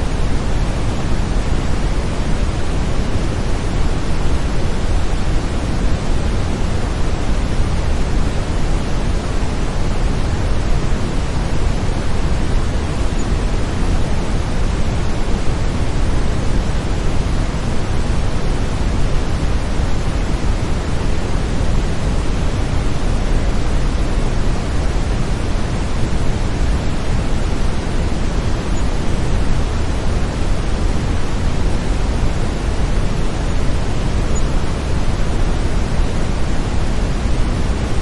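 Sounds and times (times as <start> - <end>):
brown noise hiss: 0.0 - 38.0.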